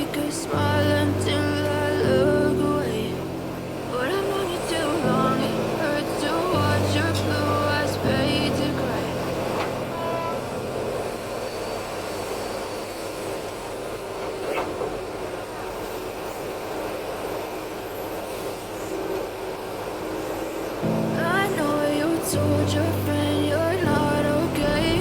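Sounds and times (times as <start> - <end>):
background music: 0.0 - 10.7, 20.8 - 25.0
earthmoving machinery rumbling: 0.0 - 16.5, 18.9 - 25.0.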